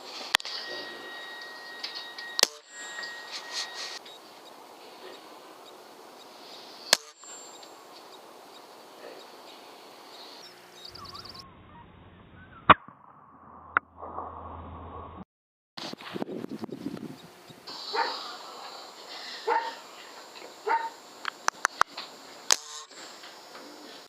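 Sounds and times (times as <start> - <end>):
steady background hiss: 0.0 - 11.0, 16.8 - 24.0
air rifle shots: 6.9 - 7.2.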